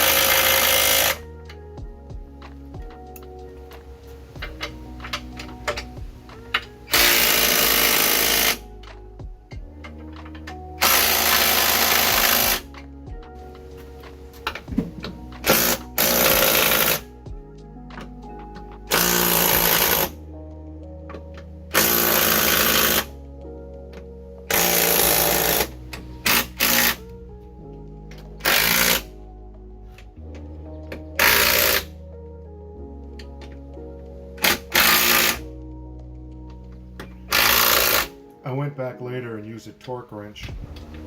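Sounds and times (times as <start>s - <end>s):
impact wrench bursts: 0.0s - 1.2s, 6.9s - 8.6s, 10.8s - 12.6s, 15.4s - 17.0s, 18.9s - 20.1s, 21.8s - 23.1s, 26.3s - 27.0s, 28.4s - 29.0s, 31.2s - 31.8s, 34.4s - 35.4s, 37.3s - 38.1s
background music: 0.0s - 41.0s.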